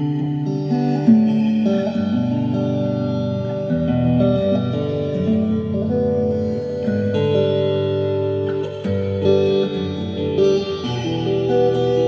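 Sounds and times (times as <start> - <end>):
guitar single notes: 0.0 - 12.0.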